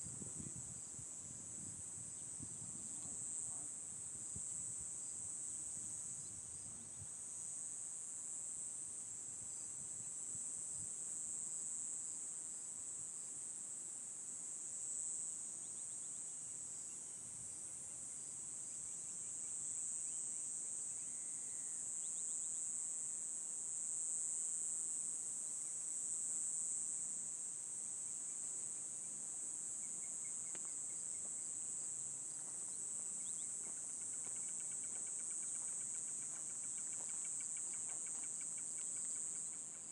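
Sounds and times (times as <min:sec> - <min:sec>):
insects trilling: 0:15.0 - 0:17.2, 0:17.8 - 0:22.8, 0:25.5 - 0:39.9.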